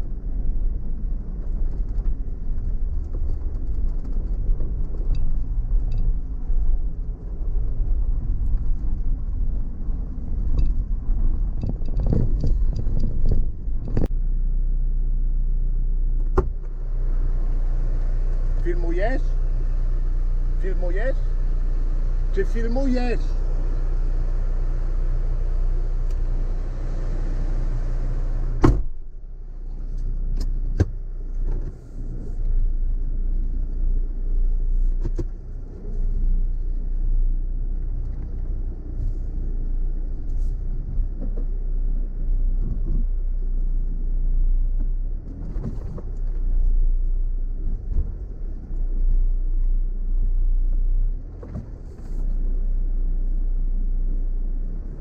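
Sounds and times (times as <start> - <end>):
car engine running low: 0.0 - 55.0
sharp thump: 28.6 - 29.0.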